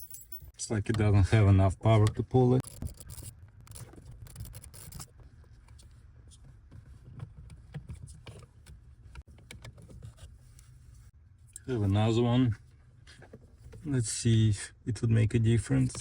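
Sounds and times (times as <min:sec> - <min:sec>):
plastic parts clicking and scraping: 0:02.0 - 0:05.8.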